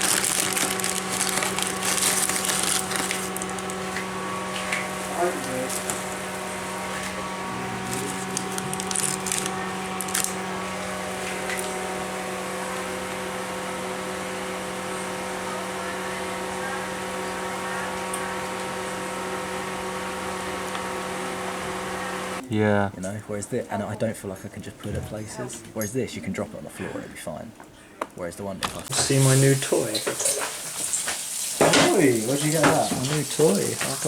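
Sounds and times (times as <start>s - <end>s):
small motor humming: 0.0s - 22.4s.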